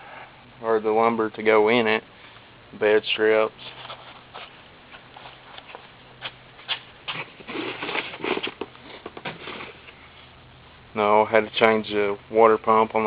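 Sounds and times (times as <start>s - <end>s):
handling taps and rustling: 3.6s - 10.0s.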